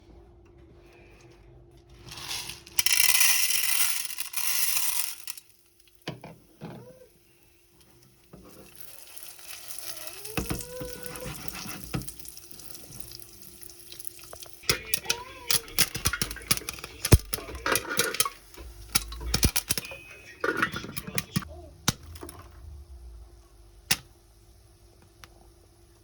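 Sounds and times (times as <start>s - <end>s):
popcorn sizzling in hot oil: 2.1s - 21.2s
small crackles: 7.8s - 22.5s.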